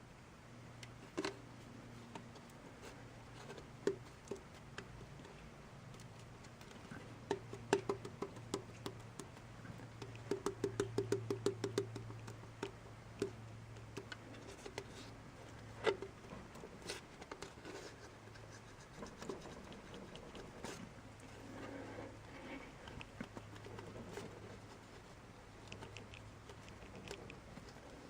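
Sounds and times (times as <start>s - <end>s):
low steady hum: 0.0s - 28.0s
clicks and taps on engine parts: 7.2s - 14.9s.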